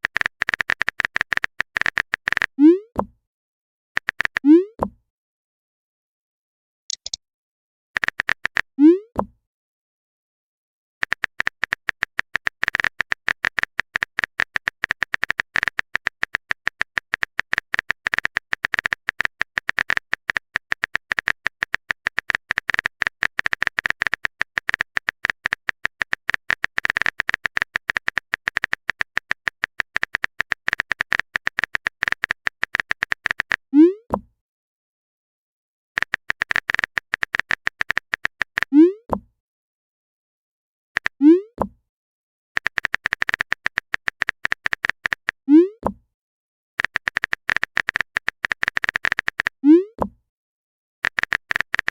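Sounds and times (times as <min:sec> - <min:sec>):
keyboard typing clicks: 0:00.0 - 0:03.1, 0:04.0 - 0:04.9, 0:06.9 - 0:07.2, 0:08.0 - 0:08.7, 0:11.0 - 0:34.2, 0:36.0 - 0:39.3, 0:41.0 - 0:41.8, 0:42.6 - 0:46.0, 0:46.8 - 0:50.2, 0:51.0 - 0:51.9.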